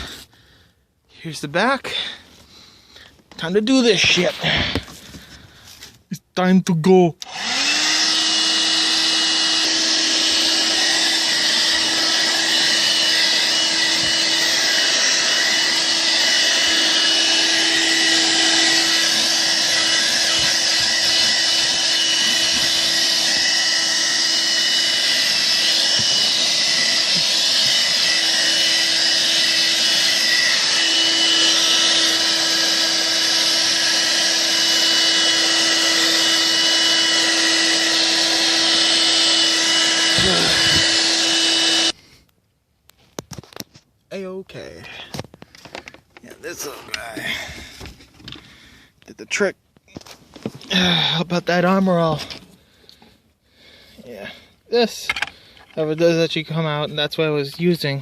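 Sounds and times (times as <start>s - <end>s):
car vacuum running: 7.2s - 42.0s.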